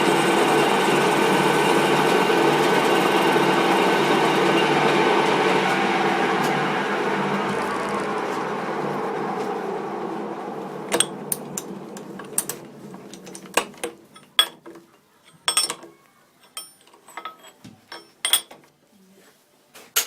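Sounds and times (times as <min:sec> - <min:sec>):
metal lathe running down: 0:00.0 - 0:14.4.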